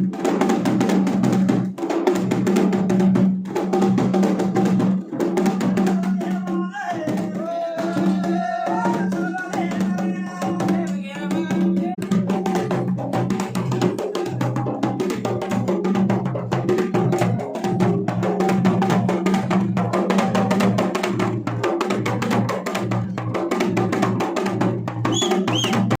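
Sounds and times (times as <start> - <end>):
folk drums fast rhythm: 0.0 - 26.0
person's voice: 5.8 - 12.0.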